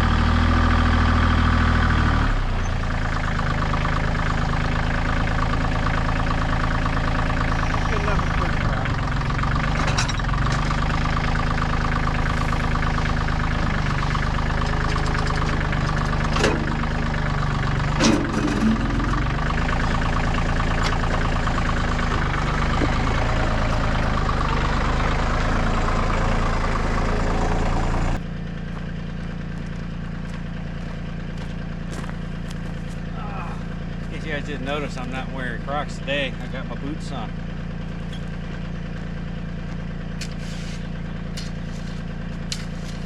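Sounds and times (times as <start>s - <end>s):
tractor engine running: 0.0s - 43.0s.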